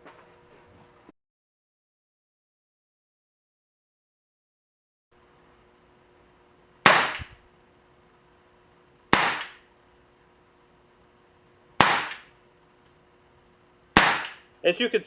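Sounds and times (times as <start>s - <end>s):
air pistol shots: 6.8s - 7.4s, 9.1s - 9.7s, 11.8s - 12.4s, 13.9s - 14.5s.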